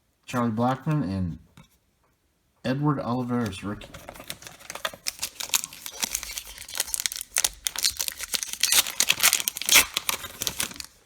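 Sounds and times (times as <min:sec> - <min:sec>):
wrapper tearing and crinkling: 0:04.0 - 0:11.0.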